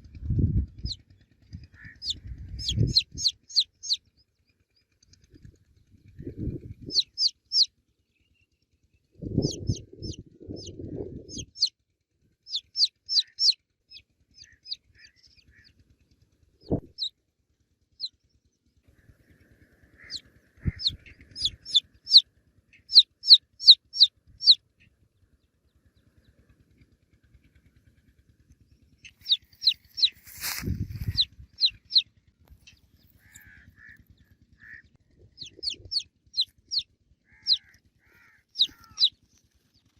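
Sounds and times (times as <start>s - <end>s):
baby chicks peeping: 1.8s - 4.0s, 6.9s - 7.7s, 9.2s - 11.7s, 12.5s - 13.6s, 16.6s - 17.1s, 20.0s - 24.6s, 29.0s - 34.0s, 34.6s - 39.2s
hen clucking: 1.8s - 4.0s, 6.9s - 7.7s, 12.5s - 13.6s, 20.0s - 22.2s, 22.8s - 24.6s, 29.0s - 32.0s, 32.6s - 34.0s, 34.6s - 39.2s.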